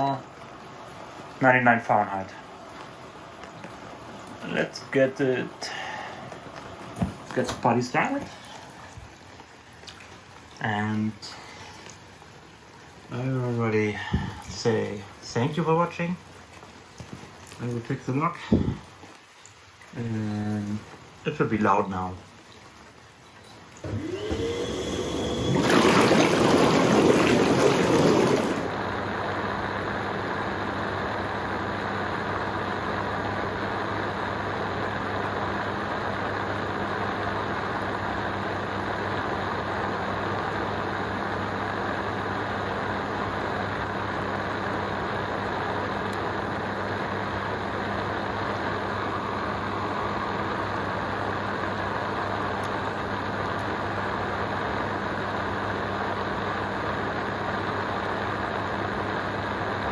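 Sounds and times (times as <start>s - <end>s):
churning water and air: 23.8s - 29.0s
pump motor whine: 23.8s - 59.9s.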